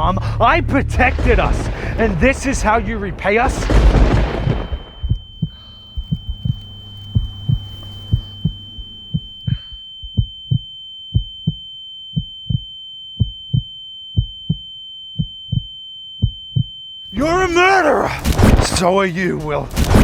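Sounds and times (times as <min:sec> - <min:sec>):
heartbeat double thumps: 0:00.0 - 0:11.6, 0:12.2 - 0:16.7
high-pitched ringing tone: 0:04.5 - 0:17.0.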